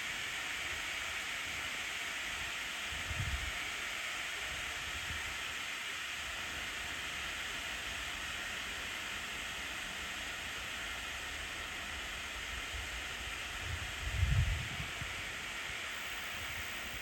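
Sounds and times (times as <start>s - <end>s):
steam locomotive hissing: 15.8s - 17.0s.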